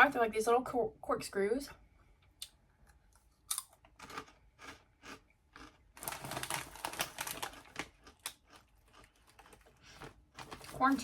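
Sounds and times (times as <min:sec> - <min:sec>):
chewing crunchy snacks: 0:03.2 - 0:11.0
crinkling: 0:03.8 - 0:11.0.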